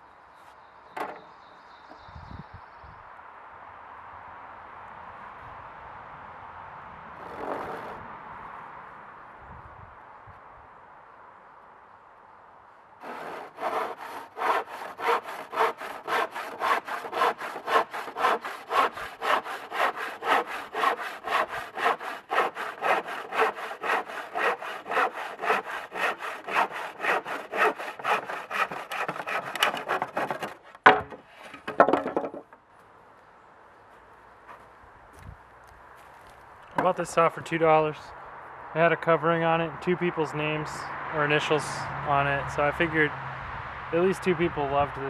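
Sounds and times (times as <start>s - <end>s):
hand saw cutting wood: 13.0s - 31.5s
wood cracking: 13.0s - 32.6s.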